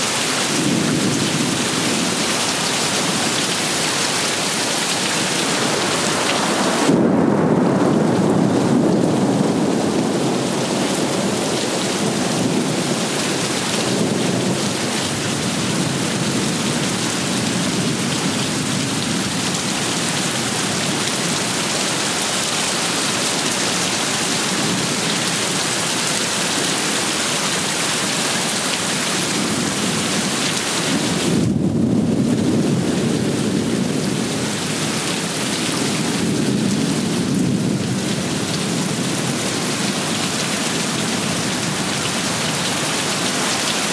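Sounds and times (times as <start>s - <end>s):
heavy rain pouring: 0.0s - 43.9s
deep rumble of thunder: 5.6s - 21.4s, 29.3s - 42.5s.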